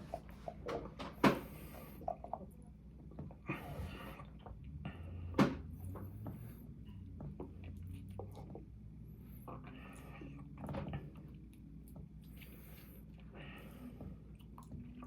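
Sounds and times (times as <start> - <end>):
steady low hum: 0.0 - 15.0
chewing and mouth clicks: 14.2 - 15.0.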